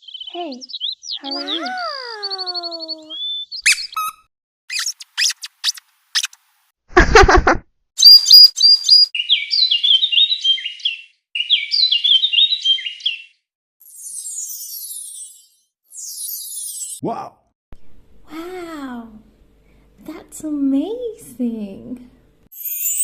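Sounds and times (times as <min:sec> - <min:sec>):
high bird-like tweeting: 0:00.0 - 0:06.4, 0:08.0 - 0:17.0
cartoon high clicks and chirps: 0:01.2 - 0:06.4, 0:08.0 - 0:09.1.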